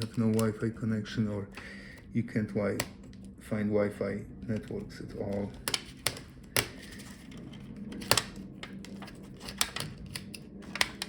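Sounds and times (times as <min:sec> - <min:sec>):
hand tools clicking on laptop parts: 0:00.0 - 0:00.6, 0:04.6 - 0:11.0.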